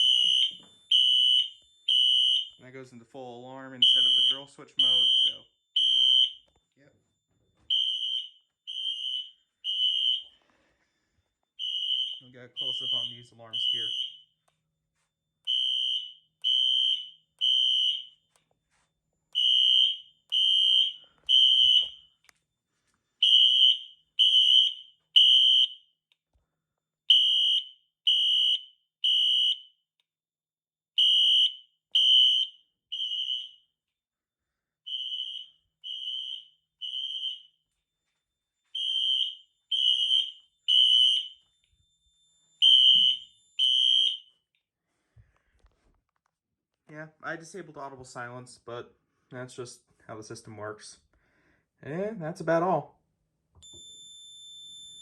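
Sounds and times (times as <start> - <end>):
fire alarm horns beeping: 0.0 - 14.5, 15.4 - 22.4, 23.2 - 26.0, 27.1 - 29.8, 31.0 - 33.7, 34.8 - 44.4.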